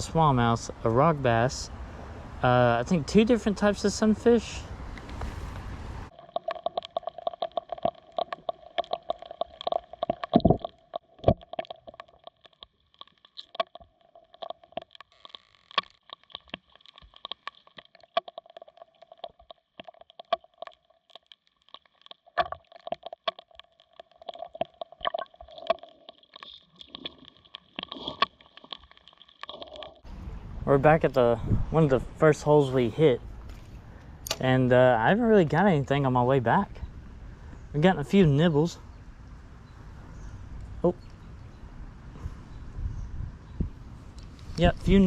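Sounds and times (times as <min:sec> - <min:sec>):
footsteps wading through water: 0:33.2 - 0:34.3.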